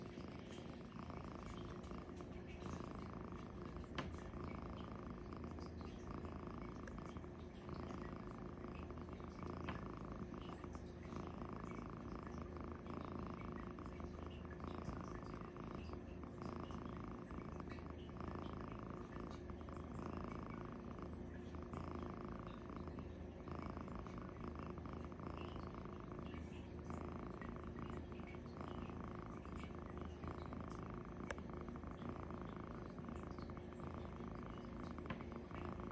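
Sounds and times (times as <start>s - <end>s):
cat snoring: 0.0s - 35.9s.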